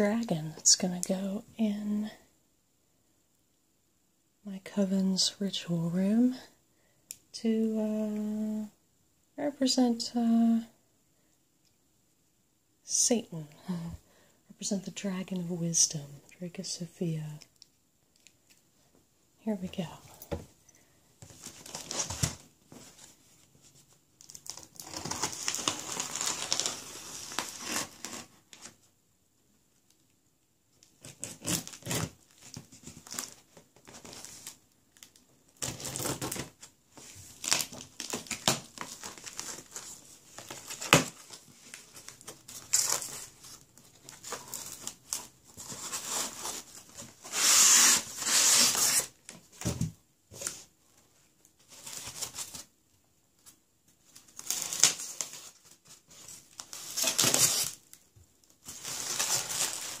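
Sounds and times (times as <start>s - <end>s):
wrapping crinkling: 21.3s - 28.8s, 30.8s - 49.4s, 53.4s - 60.0s
packaging tearing: 24.2s - 28.3s, 47.2s - 49.2s, 58.7s - 60.0s.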